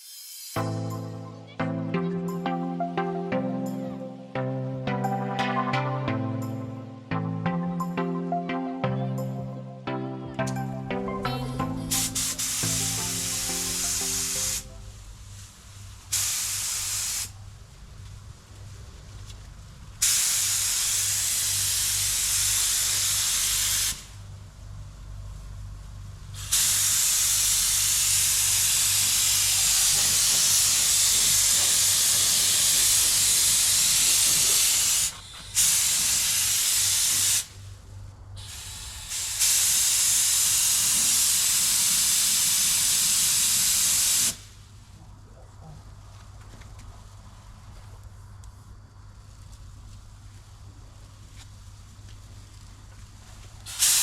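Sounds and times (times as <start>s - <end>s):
paint spray gun hissing: 11.9s - 14.9s, 16.1s - 17.3s, 20.0s - 24.2s, 26.4s - 37.5s, 38.4s - 44.6s, 53.7s - 54.0s.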